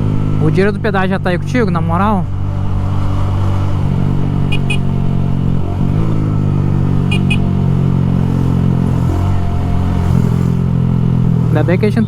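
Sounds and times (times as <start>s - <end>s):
motorcycle engine cruising: 0.0s - 12.0s
short high beeps: 4.5s - 4.9s, 7.1s - 7.5s.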